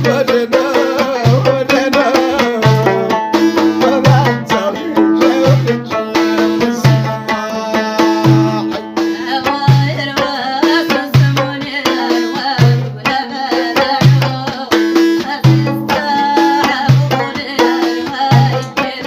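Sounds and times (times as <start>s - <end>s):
low drum beat: 0.0s - 9.0s
hand drums: 0.0s - 19.0s
plucked string melody: 0.0s - 19.0s.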